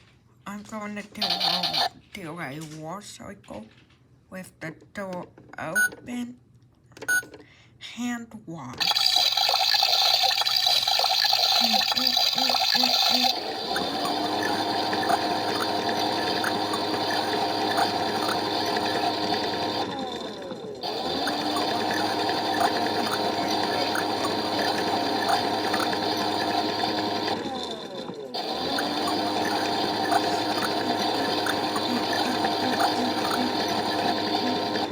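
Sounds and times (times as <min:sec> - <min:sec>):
small electric motor whine: 0:08.8 - 0:34.9.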